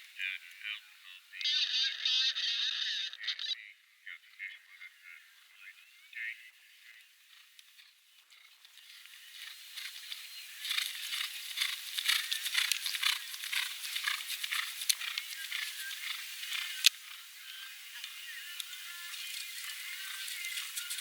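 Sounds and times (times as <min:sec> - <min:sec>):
horse hoofbeats on grass: 0:08.7 - 0:17.3, 0:18.0 - 0:21.0.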